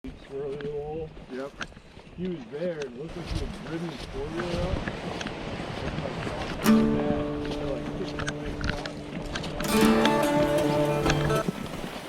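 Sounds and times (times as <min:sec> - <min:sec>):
background guitar music: 0:06.6 - 0:11.9.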